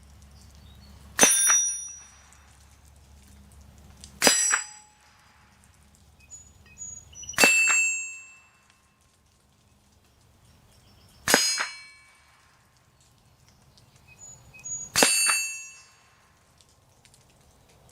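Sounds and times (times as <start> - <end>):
steel target ringing ping: 1.2 - 2.3, 4.2 - 5.0, 7.4 - 8.7, 11.3 - 12.4, 15.0 - 16.2.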